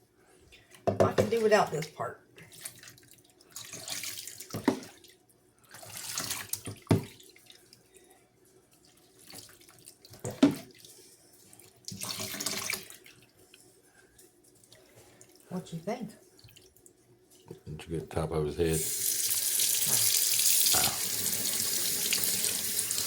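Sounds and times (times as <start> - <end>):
sink water splashing: 1.0 - 8.0, 8.7 - 13.7, 18.8 - 23.0.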